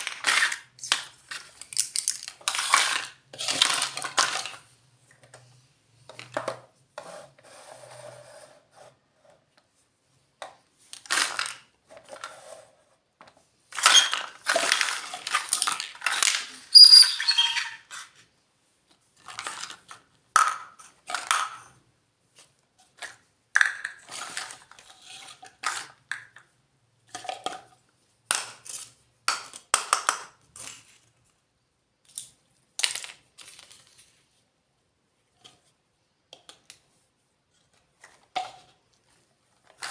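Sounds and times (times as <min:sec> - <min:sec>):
small toy pieces clicking and clinking: 0:00.0 - 0:04.6, 0:13.8 - 0:17.8.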